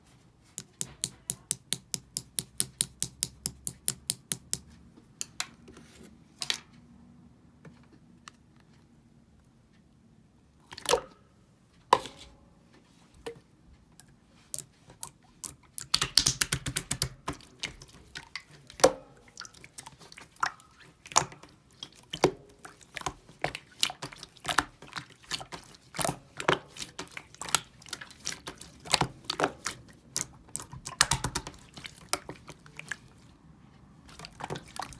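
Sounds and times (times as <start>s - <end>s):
slime squishing and crackling: 14.6s - 33.2s
slime clicking pops: 15.8s - 17.2s.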